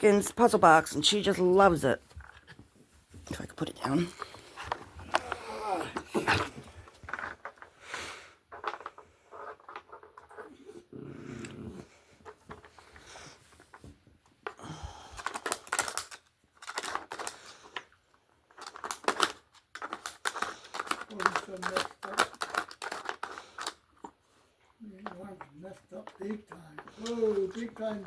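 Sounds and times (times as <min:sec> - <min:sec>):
puzzle box pieces clicking and clattering: 0:15.1 - 0:17.9, 0:18.5 - 0:23.8, 0:25.0 - 0:28.0.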